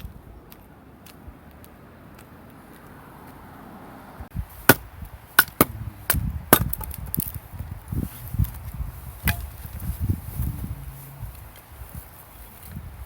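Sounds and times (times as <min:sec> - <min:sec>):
wood splitting cracks: 0:04.7 - 0:07.4.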